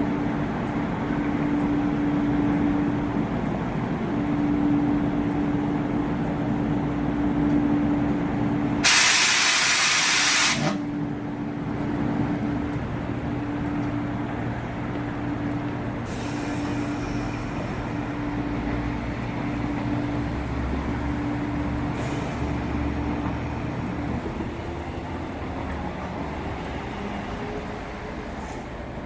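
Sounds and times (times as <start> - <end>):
train machinery hum: 0.0 - 29.0
short air hisses: 8.8 - 10.8.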